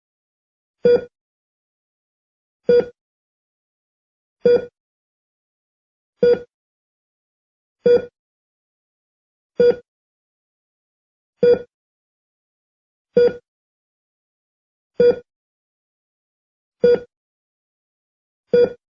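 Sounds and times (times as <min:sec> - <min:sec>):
heart monitor beeps: 0:00.8 - 0:01.1, 0:02.6 - 0:03.0, 0:04.4 - 0:04.8, 0:06.2 - 0:06.5, 0:07.8 - 0:08.2, 0:09.6 - 0:09.9, 0:11.4 - 0:11.7, 0:13.2 - 0:13.4, 0:15.0 - 0:15.3, 0:16.8 - 0:17.1, 0:18.5 - 0:18.8.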